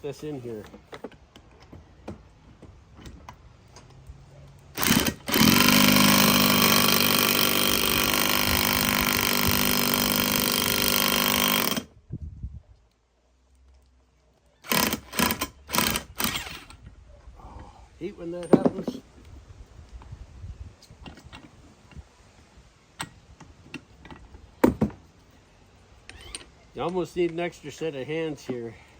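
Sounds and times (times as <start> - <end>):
power tool running hard: 4.8 - 11.9, 14.7 - 16.5.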